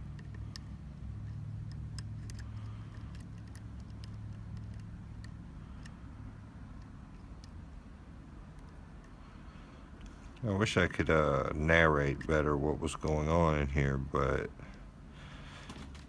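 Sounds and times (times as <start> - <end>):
steady low hum: 0.0 - 16.0
lock picks clicking in lock: 1.6 - 6.0.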